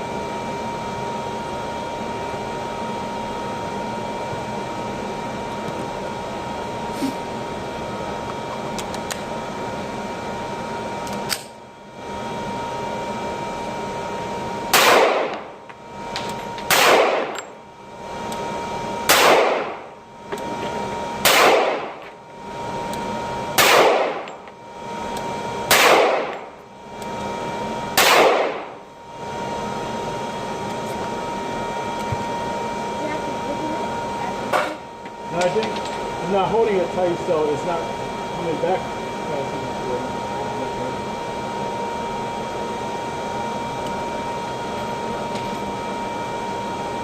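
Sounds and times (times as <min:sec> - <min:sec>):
handgun shots: 0:14.8 - 0:15.4, 0:16.7 - 0:17.4, 0:19.1 - 0:19.8, 0:21.2 - 0:21.9, 0:23.6 - 0:24.3, 0:25.7 - 0:26.4, 0:28.0 - 0:28.6.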